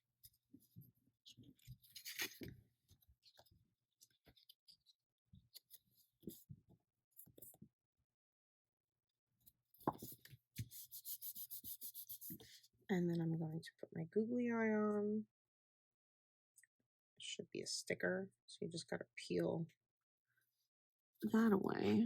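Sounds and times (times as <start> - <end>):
paper rustling and tapping: 9.8 - 10.9
rubbing strokes on paper: 10.6 - 12.6.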